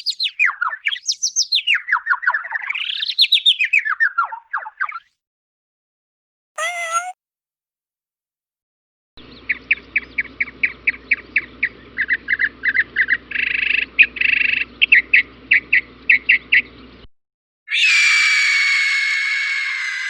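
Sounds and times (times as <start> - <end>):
bird calling sharp notes: 6.6 - 7.2
bird chattering: 6.6 - 7.2.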